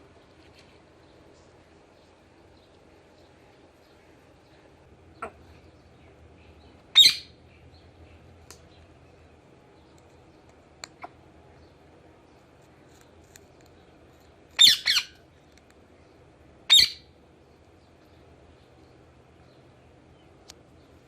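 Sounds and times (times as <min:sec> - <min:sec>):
parakeet squawking: 0:06.9 - 0:07.4, 0:14.6 - 0:15.2, 0:16.7 - 0:17.1.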